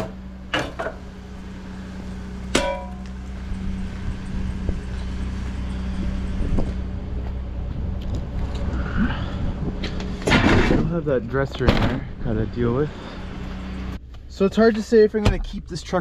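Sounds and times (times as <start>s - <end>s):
vehicle engine humming: 0.0s - 16.0s
metal clang: 2.5s - 3.0s.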